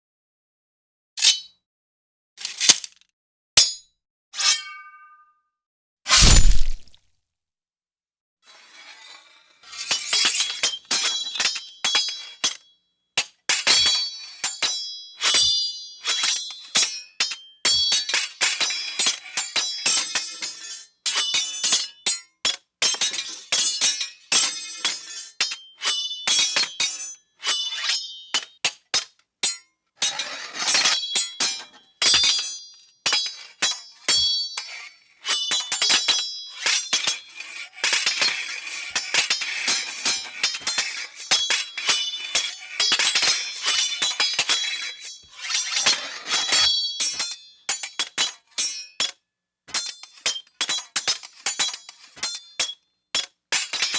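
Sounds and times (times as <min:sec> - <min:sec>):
sword blades clashing and ringing: 0:01.2 - 0:01.5, 0:02.4 - 0:03.0, 0:06.1 - 0:06.9.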